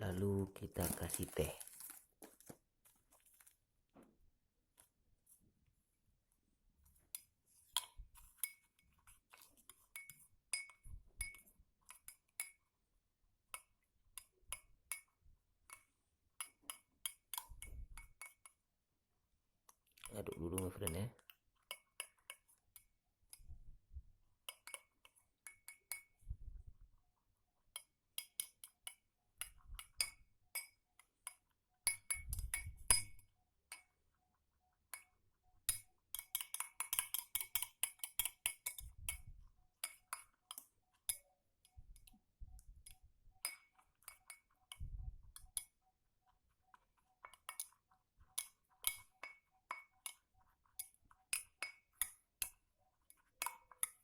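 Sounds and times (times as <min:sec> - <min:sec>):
spoon clinking in a glass: 0:07.2 - 0:12.6, 0:27.8 - 0:34.0, 0:34.9 - 0:41.2, 0:42.8 - 0:45.8, 0:46.7 - 0:54.0.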